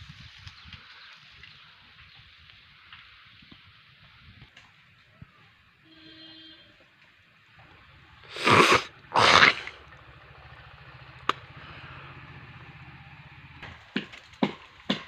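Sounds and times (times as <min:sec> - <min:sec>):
blade chopping tree branch: 0:13.6 - 0:15.0.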